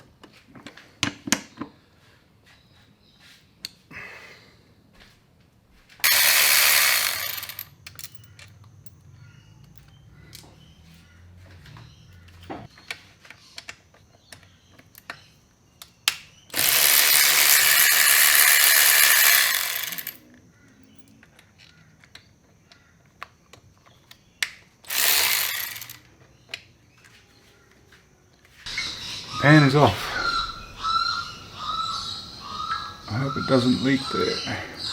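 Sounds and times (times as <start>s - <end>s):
power ratchet running: 6.0s - 7.8s, 16.5s - 20.2s, 24.9s - 26.0s
metallic clicks of tools: 6.0s - 10.6s, 15.8s - 26.7s.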